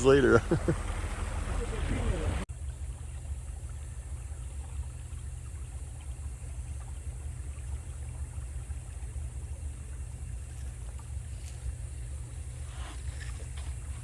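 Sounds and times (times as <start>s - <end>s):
wind buffeting microphone: 0.0s - 2.4s.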